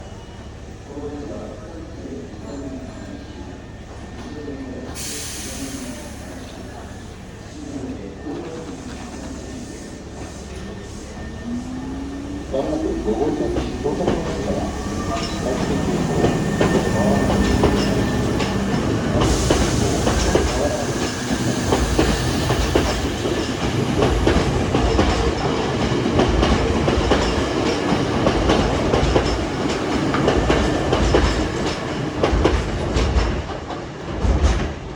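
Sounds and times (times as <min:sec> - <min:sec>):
electric train running: 0:08.5 - 0:33.2.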